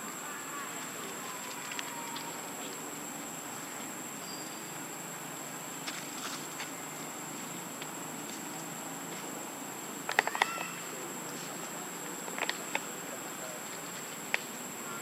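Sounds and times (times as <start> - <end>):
high-pitched insect drone: 0.0 - 5.5
outdoor ambience: 0.0 - 15.0.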